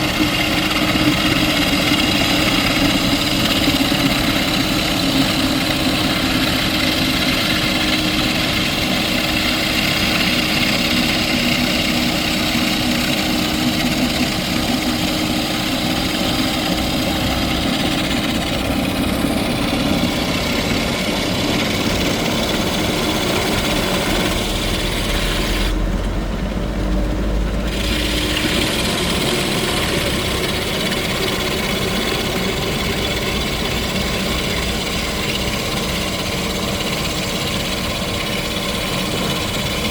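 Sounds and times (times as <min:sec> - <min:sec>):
rock drill drilling: 0:00.0 - 0:26.2, 0:27.5 - 0:39.9
deep engine rumble: 0:10.6 - 0:39.9.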